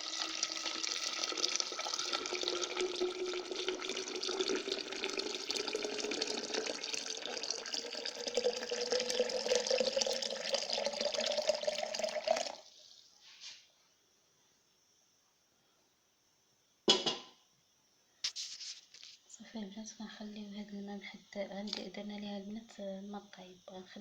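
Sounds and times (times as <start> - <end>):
water pouring into a container: 0.0 - 13.0.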